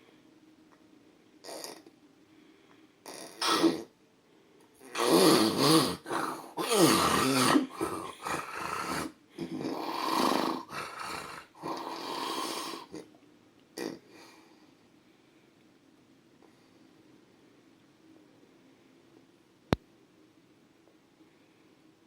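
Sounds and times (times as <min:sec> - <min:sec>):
man snoring loudly with snorts: 0:04.8 - 0:13.0.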